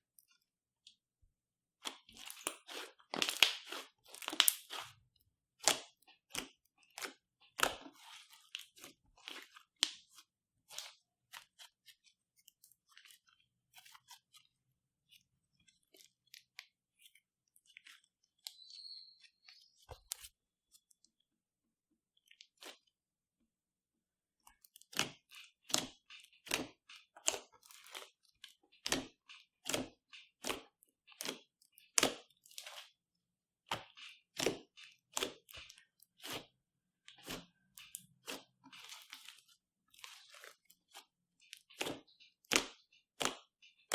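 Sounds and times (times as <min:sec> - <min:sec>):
slime crackling and popping: 0:02.2 - 0:04.9.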